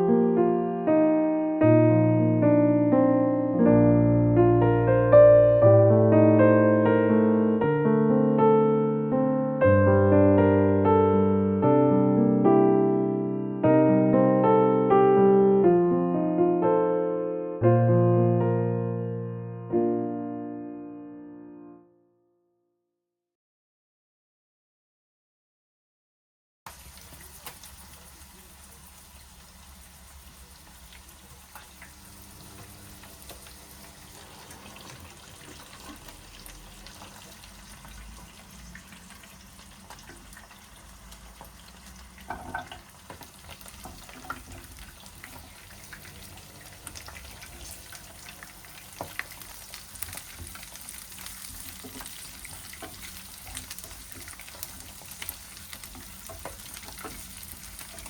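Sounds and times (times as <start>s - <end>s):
food sizzling in a pan: 26.7s - 58.0s.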